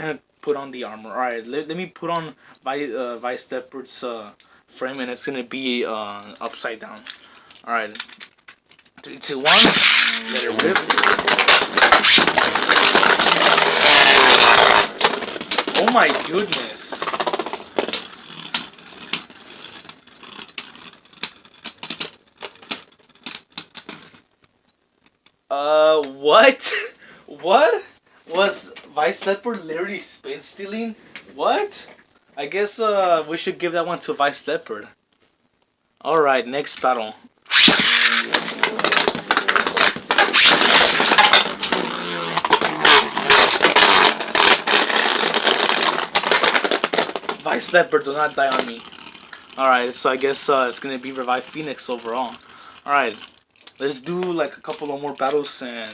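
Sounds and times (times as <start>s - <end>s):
spinning tops hissing: 9.4s - 18.0s, 37.5s - 44.8s
spinning tops clacking together: 9.4s - 18.7s, 37.5s - 45.0s.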